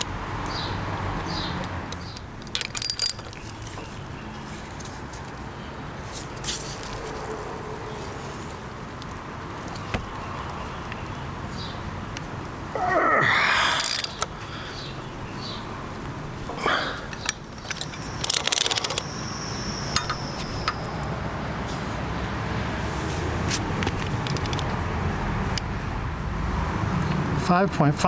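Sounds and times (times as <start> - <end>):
light metal clinks: 16.7 - 21.1.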